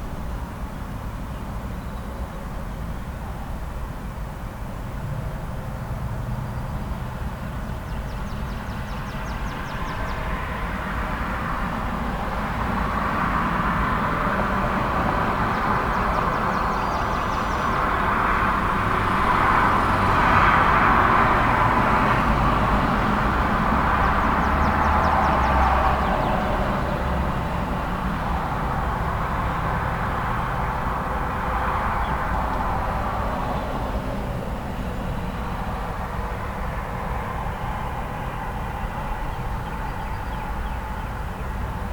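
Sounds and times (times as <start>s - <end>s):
cars and trucks passing: 9.7s - 41.9s.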